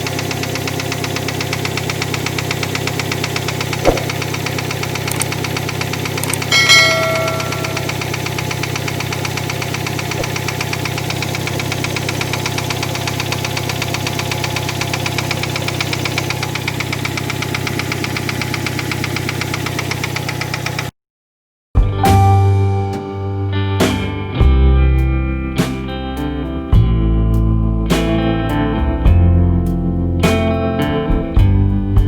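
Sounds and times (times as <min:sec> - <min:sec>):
car engine knocking: 0:00.0 - 0:20.9
brief ringing tone: 0:06.4 - 0:08.2.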